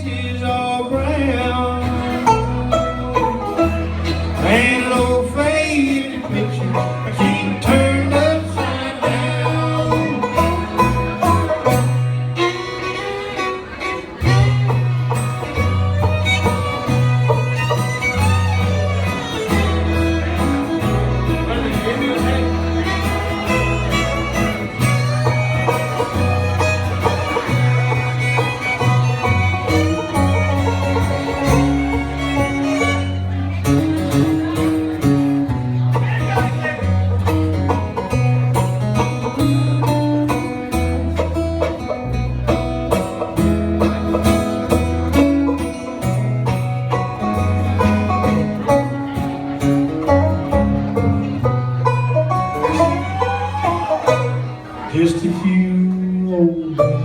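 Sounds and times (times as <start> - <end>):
bass alternating low notes: 0.0 - 12.4, 14.2 - 56.2
banjo: 0.0 - 57.0
fiddle: 0.0 - 57.0
guitar: 0.0 - 57.0.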